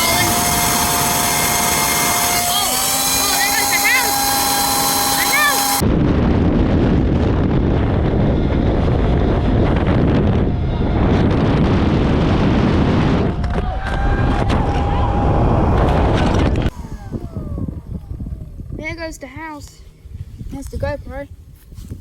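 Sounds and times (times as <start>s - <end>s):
leaf blower blasting: 0.0s - 5.8s, 15.4s - 19.4s
wind buffeting microphone: 0.0s - 22.0s.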